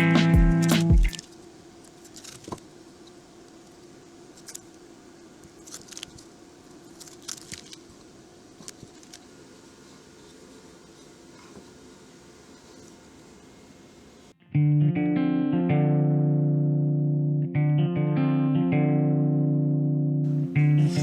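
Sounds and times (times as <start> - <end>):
music: 0.0 - 1.2, 14.4 - 21.0.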